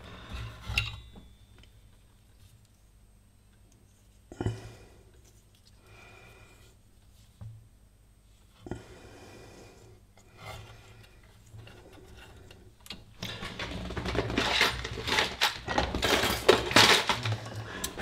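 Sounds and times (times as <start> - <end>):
tools rummaging and clattering: 13.2 - 18.0.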